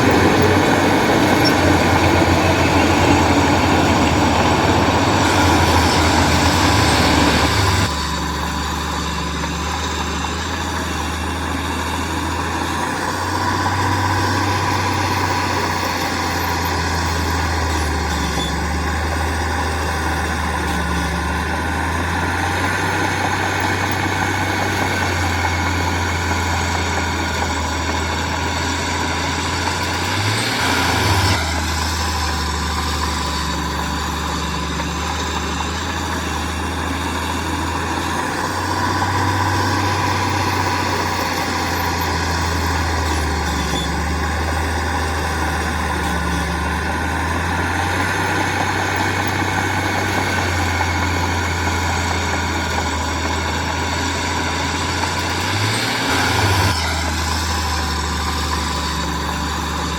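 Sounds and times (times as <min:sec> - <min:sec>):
diesel machinery engine drone: 0:00.0 - 0:59.9.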